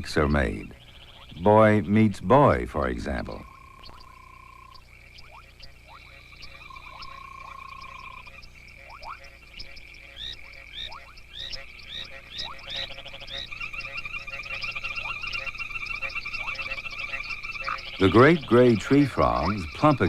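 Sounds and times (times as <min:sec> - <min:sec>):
dense buzzing frog trill: 0:00.0 - 0:20.0
high frog trill: 0:00.0 - 0:20.0
lower rising frog notes: 0:00.0 - 0:20.0
short rising frog chirps: 0:03.4 - 0:18.2.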